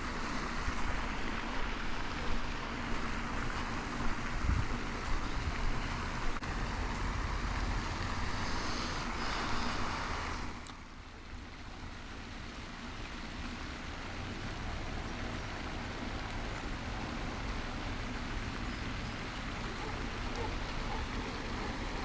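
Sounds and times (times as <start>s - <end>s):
wind buffeting microphone: 4.0s - 6.2s.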